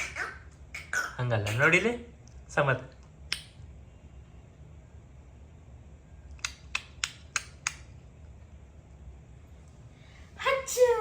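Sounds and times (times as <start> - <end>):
low steady hum: 0.0 - 11.0
quick sharp clicks: 6.3 - 7.9.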